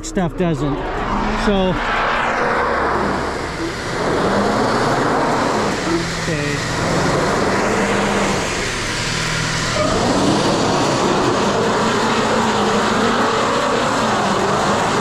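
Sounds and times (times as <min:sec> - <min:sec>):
vehicle rumbling on icy road: 0:00.0 - 0:15.0.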